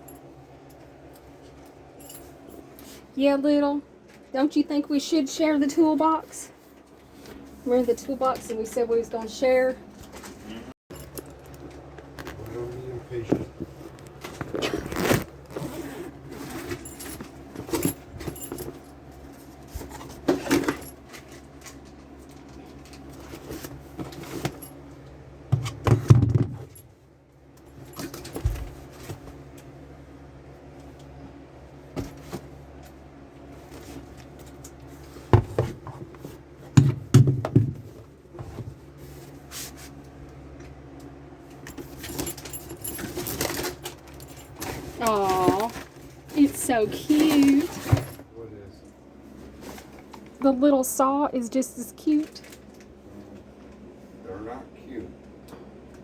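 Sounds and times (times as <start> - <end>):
metallic clinks and rattles: 2.0 - 2.7, 10.9 - 11.8, 16.4 - 19.0, 41.6 - 45.8.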